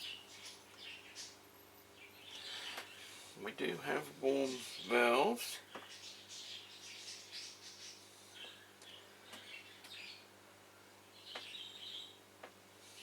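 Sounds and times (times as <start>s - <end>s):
faint bird chirps: 0.0s - 3.2s, 5.7s - 10.3s, 11.1s - 13.0s.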